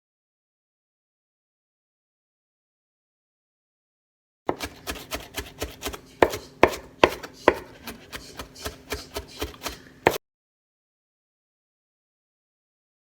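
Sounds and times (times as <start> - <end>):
knife chopping on cutting board: 4.5 - 10.2.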